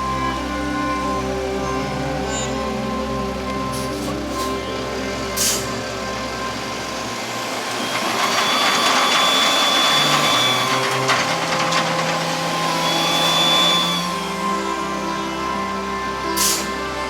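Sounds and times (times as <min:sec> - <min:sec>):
diesel truck engine revving: 0:00.0 - 0:17.0.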